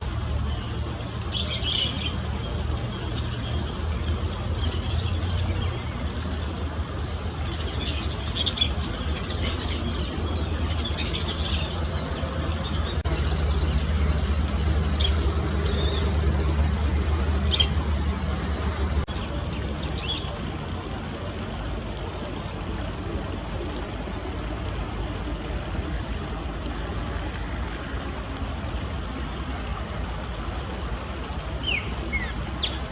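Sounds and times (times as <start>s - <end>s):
low motor hum: 0.0s - 32.9s.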